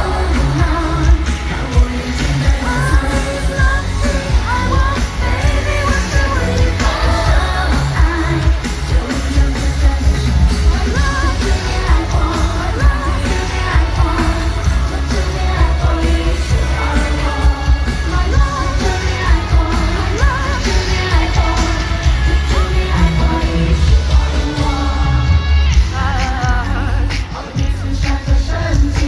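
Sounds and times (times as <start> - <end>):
heavy bass line: 0.0 - 29.0
woman singing: 0.0 - 29.0.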